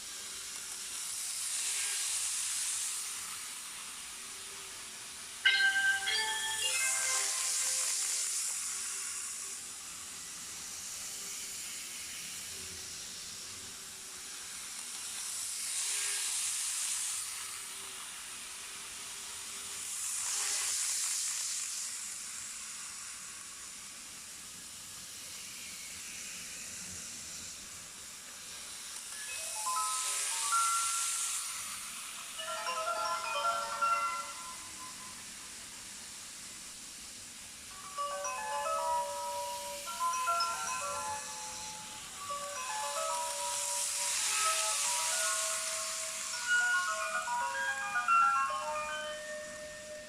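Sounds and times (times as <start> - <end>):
model train running on track: 0.0 - 50.0
electronic chime melody: 5.4 - 8.4, 29.2 - 31.8, 32.4 - 35.3, 37.8 - 50.0.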